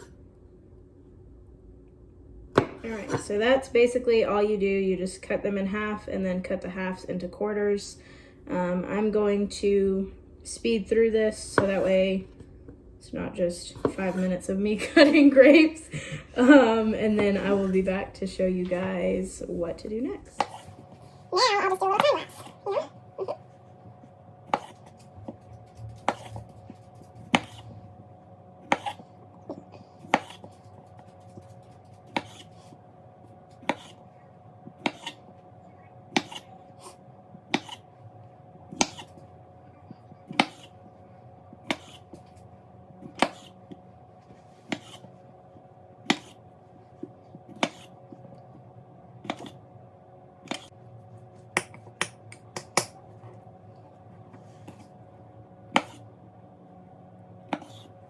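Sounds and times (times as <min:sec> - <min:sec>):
faint steady hum: 0:00.0 - 0:58.0
knife chopping on cutting board: 0:24.5 - 0:27.7, 0:28.6 - 0:29.0, 0:30.0 - 0:32.6, 0:33.5 - 0:34.0, 0:34.6 - 0:35.2, 0:36.1 - 0:36.5, 0:37.5 - 0:37.8, 0:38.7 - 0:39.2, 0:40.3 - 0:40.8, 0:41.6 - 0:42.3, 0:43.0 - 0:43.6, 0:44.7 - 0:45.1, 0:46.0 - 0:46.4, 0:47.5 - 0:48.0, 0:49.2 - 0:49.6, 0:55.7 - 0:56.0, 0:57.5 - 0:57.9.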